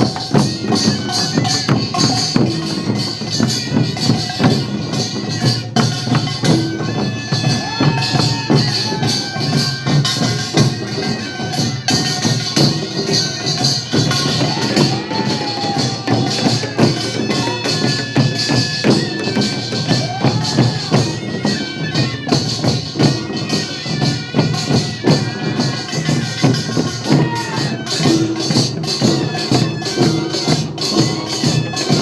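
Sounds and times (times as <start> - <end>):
fast percussion with metallic clashing: 0.0 - 32.0.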